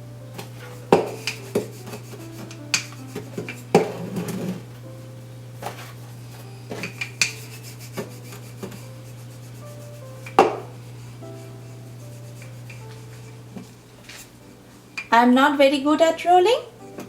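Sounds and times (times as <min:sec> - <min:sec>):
rolling pin rubbing on dough: 0:00.5 - 0:04.7, 0:06.7 - 0:14.4.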